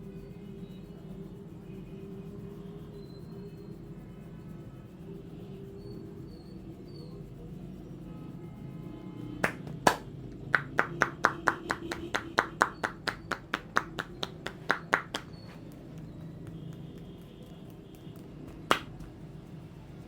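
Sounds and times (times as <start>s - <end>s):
hands slapping in massage: 9.4s - 19.2s.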